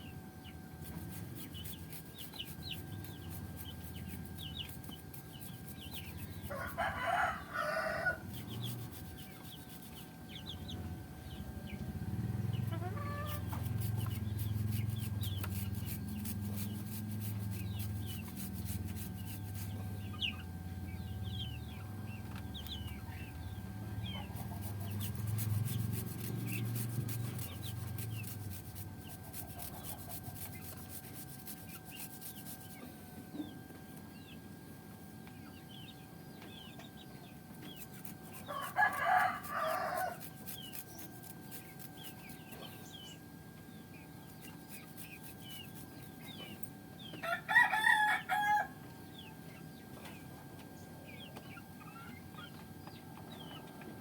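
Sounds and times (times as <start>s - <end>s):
rooster crowing: 6.5s - 8.2s, 38.4s - 40.3s, 47.2s - 48.8s.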